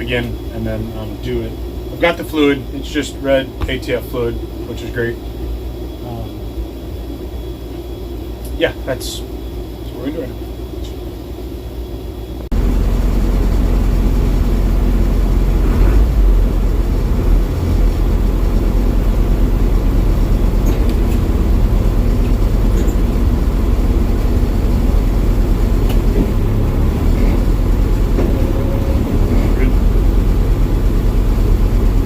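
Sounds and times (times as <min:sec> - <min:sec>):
diesel engine rumbling: 0:12.5 - 0:32.0.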